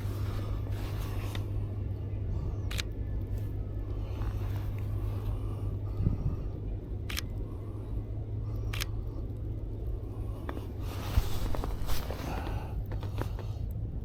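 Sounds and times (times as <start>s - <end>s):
scraping rustle with small clicks: 0.0s - 1.6s, 2.6s - 5.5s, 10.3s - 13.8s
low rumble: 0.0s - 14.0s.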